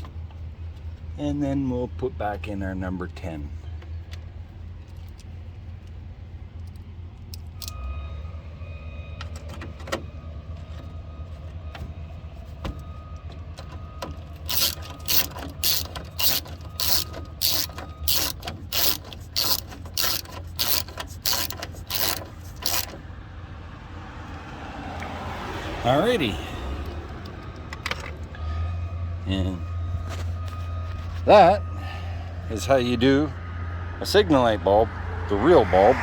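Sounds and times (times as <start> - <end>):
ratchet wrench ratcheting: 14.5 - 23.0.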